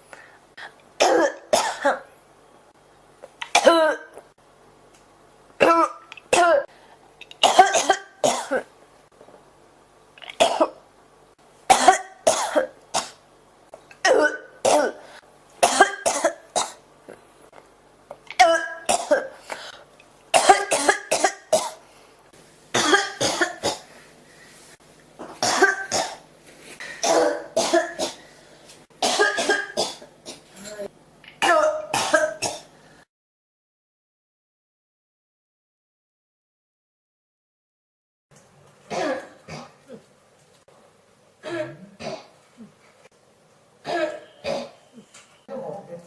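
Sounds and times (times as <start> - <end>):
person coughing: 1.0 - 2.1, 3.4 - 4.2, 5.6 - 6.7, 7.4 - 8.7, 10.4 - 10.8, 11.7 - 13.2, 14.0 - 15.0, 15.6 - 16.8, 18.4 - 19.7, 20.4 - 21.8, 22.8 - 23.8, 25.2 - 26.2, 26.8 - 28.2, 29.0 - 32.7, 38.9 - 40.1, 41.4 - 42.7, 43.8 - 45.0.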